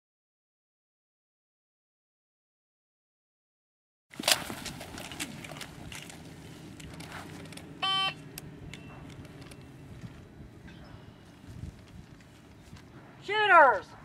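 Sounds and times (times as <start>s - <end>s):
low steady hum: 4.2s - 14.0s
short electronic beep: 7.8s - 8.2s.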